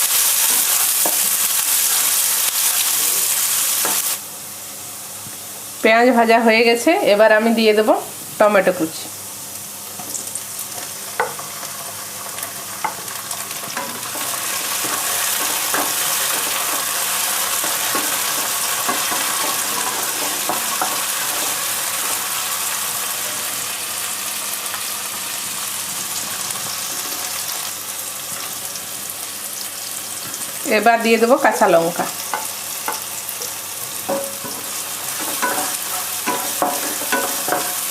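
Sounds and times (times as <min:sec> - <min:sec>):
vegetables sizzling in oil: 0:00.0 - 0:37.9
spatula knocking against pan: 0:34.1 - 0:37.8.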